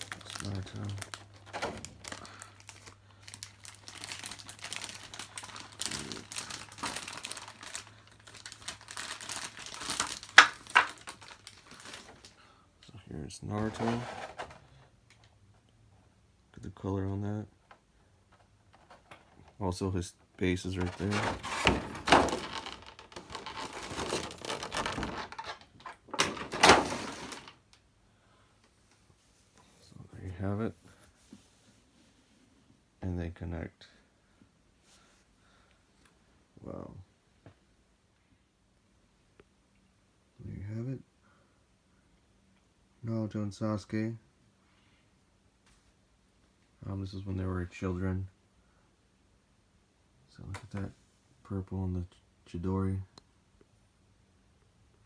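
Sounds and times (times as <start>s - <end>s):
plastic packaging crinkling: 0.0s - 12.4s, 20.7s - 27.6s
sharp plastic crackles: 0.0s - 12.4s, 20.8s - 27.8s.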